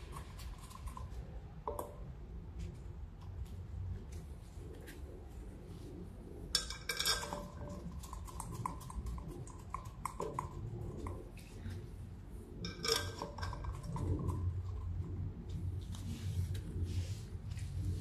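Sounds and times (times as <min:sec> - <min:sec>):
metal parts clinking and rattling: 0:06.6 - 0:07.8, 0:12.6 - 0:14.3.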